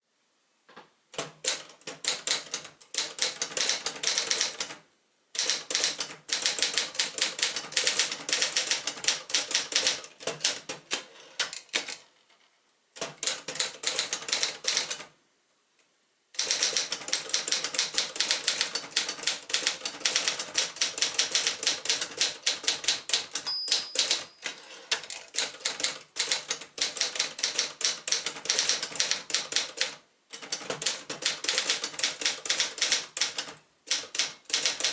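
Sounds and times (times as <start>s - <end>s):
typewriter keystrokes: 1.2s - 4.8s, 5.4s - 12.1s, 13.0s - 15.1s, 16.4s - 34.9s
short ringing tone: 23.5s - 24.6s.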